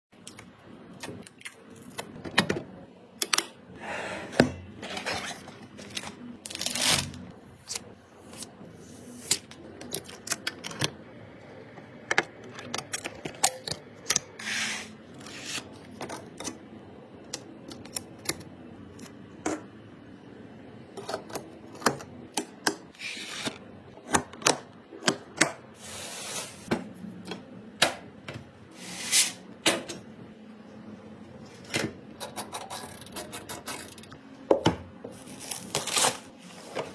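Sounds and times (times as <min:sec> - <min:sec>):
computer parts clicking and tapping: 0:09.2 - 0:11.0, 0:11.7 - 0:14.3, 0:31.7 - 0:34.2.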